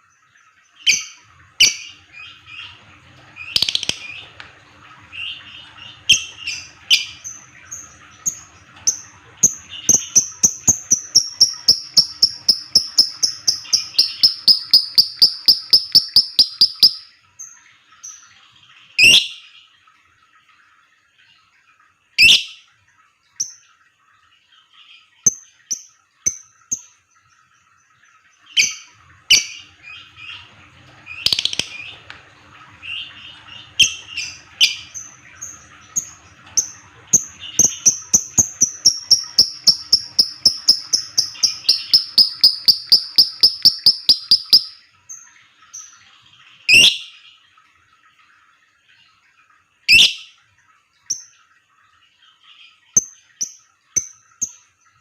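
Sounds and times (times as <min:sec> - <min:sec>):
lovebird rapid chattering song: 0:03.4 - 0:04.2, 0:08.3 - 0:17.1, 0:31.1 - 0:31.9, 0:36.6 - 0:44.8
lovebird calling: 0:09.9 - 0:17.1, 0:37.6 - 0:44.8.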